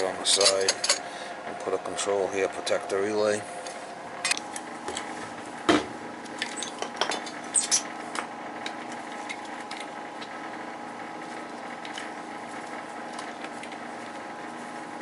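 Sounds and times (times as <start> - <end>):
steady hum: 0.0 - 15.0
metal tools clinking and knocking: 0.3 - 1.0.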